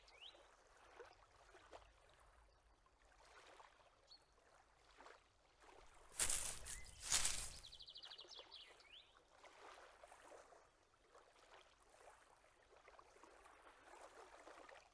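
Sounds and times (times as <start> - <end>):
grass rustling: 6.0 - 7.8.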